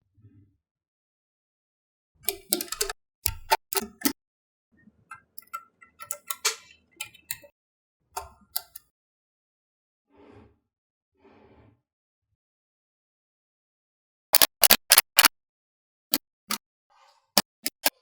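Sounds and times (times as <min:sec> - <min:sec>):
magnetic balls clicking: 0:02.3 - 0:04.2, 0:05.1 - 0:07.5, 0:14.4 - 0:15.3, 0:17.4 - 0:18.0.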